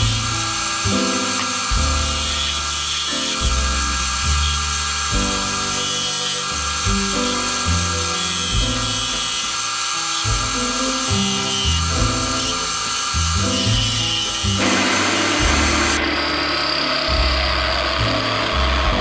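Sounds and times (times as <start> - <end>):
background music with bass line: 0.0 - 9.5, 10.2 - 19.0
high-pitched whine: 14.0 - 19.0.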